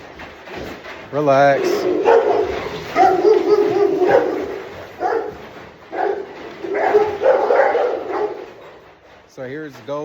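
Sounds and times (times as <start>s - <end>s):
dogs barking and whining: 1.4s - 9.3s.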